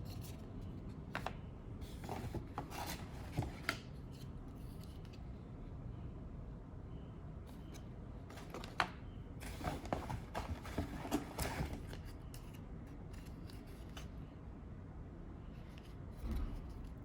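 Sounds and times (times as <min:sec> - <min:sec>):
packaging rustling and scraping: 0:01.8 - 0:05.0, 0:08.3 - 0:14.1.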